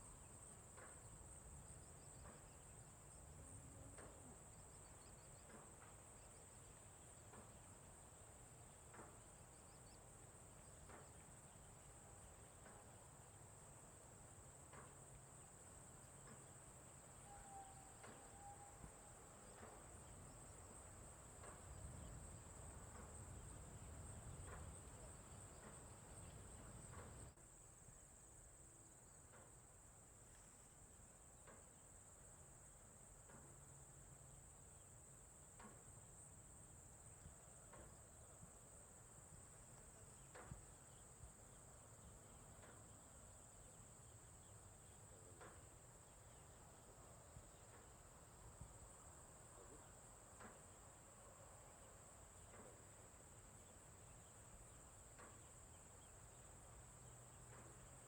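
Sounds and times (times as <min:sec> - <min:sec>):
crickets trilling: 0:14.5 - 0:27.4.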